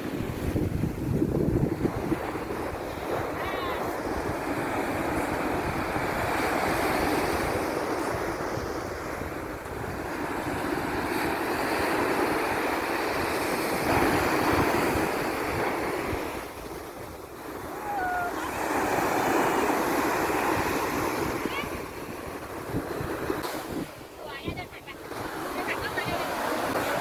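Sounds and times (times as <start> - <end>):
sea waves washing on shore: 0.0 - 27.0
wind buffeting microphone: 0.0 - 27.0.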